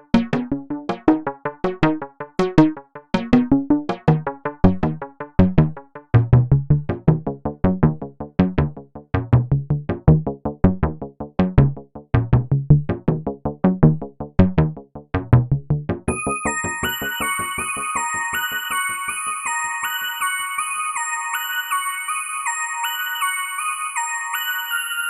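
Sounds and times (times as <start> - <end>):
high synth melody: 16.1 - 25.0
synthesizer music: 16.1 - 25.0.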